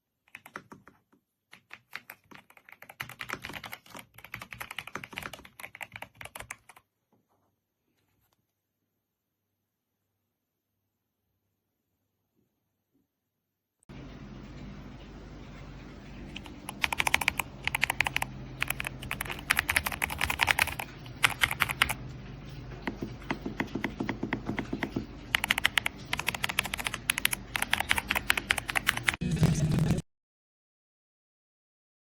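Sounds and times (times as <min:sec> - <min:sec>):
fast typing on mechanical keyboard: 0:00.3 - 0:06.9, 0:16.3 - 0:22.0, 0:22.8 - 0:29.2.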